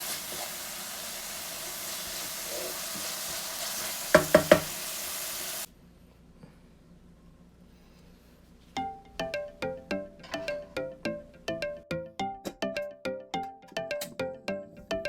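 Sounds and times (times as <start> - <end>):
food sizzling in a frying pan: 0.0 - 5.7
utensil knocking on pan: 4.1 - 4.8.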